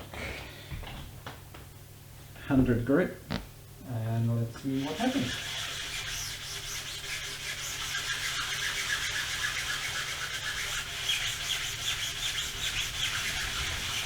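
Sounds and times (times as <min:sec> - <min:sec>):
sanding block rasping on metal: 0:04.6 - 0:14.0.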